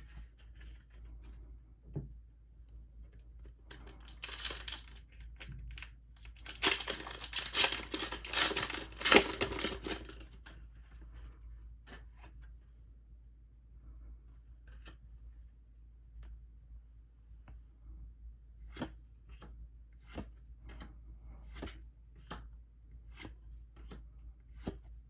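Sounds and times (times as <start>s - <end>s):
packaging tearing and crinkling: 4.1s - 5.0s, 6.2s - 10.3s.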